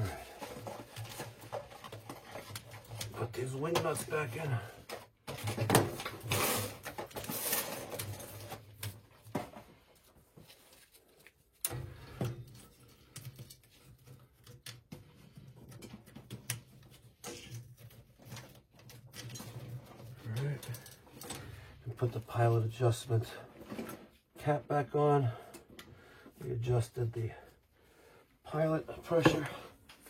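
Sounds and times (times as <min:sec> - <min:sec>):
metal clicks and rattles of small parts: 0:12.4 - 0:21.6.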